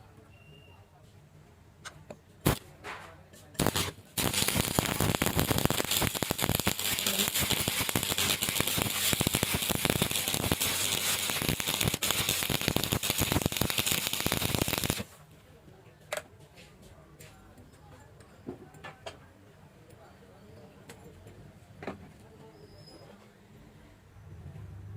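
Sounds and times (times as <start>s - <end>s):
welding arc crackling: 2.4s - 2.6s, 3.6s - 15.1s.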